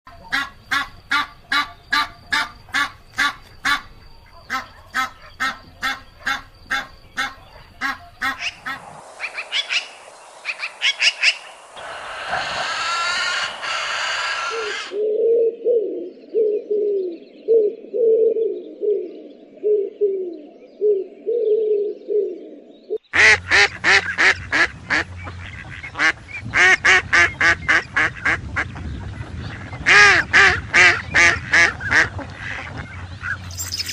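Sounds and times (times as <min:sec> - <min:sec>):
ducks quacking: 0:00.1 - 0:09.0, 0:23.1 - 0:33.5
other bird calls: 0:00.1 - 0:18.3, 0:22.9 - 0:33.9
hiss: 0:08.6 - 0:14.9.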